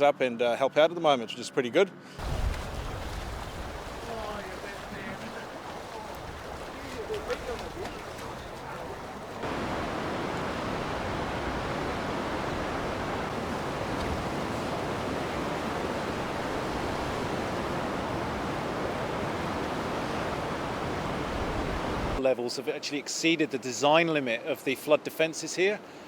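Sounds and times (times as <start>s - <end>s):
floodwater rushing: 2.2s - 22.2s.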